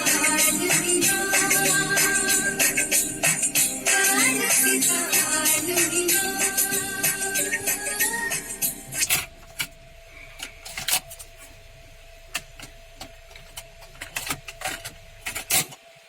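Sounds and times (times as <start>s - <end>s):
car stereo music: 0.0s - 15.2s
faint steady hum: 0.0s - 16.0s.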